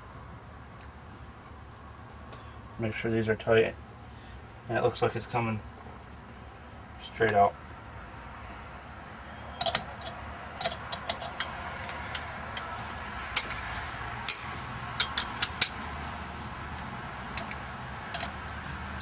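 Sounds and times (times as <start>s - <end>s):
sharp metal clicks and taps: 9.6s - 15.9s, 16.5s - 19.0s.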